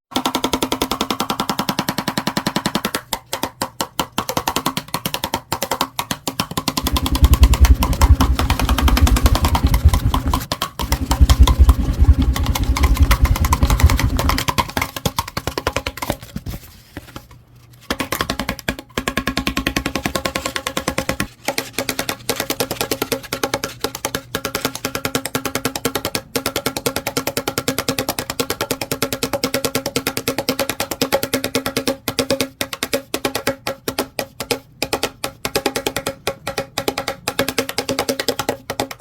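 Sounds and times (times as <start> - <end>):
fan blades clattering on cardboard tube: 0.2 - 39.0
heavy low rumble: 6.8 - 14.4.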